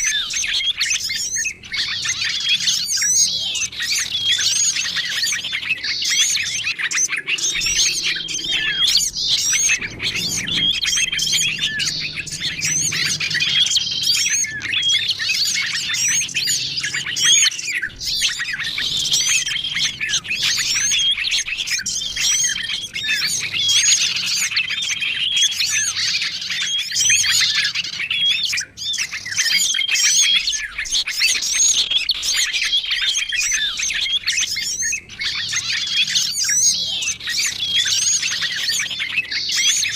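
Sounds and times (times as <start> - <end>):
songbirds chirping chorus: 0.0 - 39.9.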